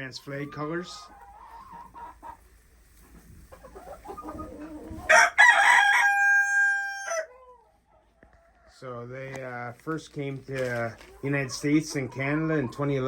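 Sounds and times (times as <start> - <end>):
chickens clucking: 0.0 - 13.0
rooster crowing: 5.1 - 7.3.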